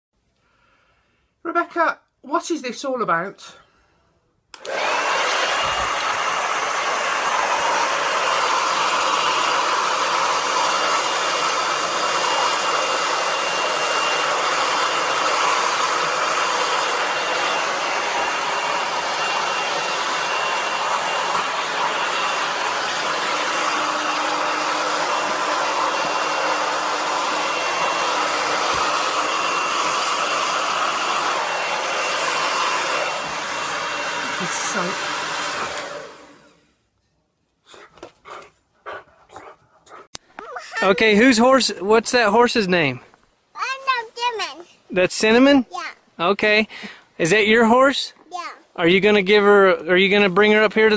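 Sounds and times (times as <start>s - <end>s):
hair dryer running: 4.6s - 36.7s, 40.2s - 42.7s, 43.7s - 45.6s, 46.2s - 48.1s, 48.8s - 50.9s.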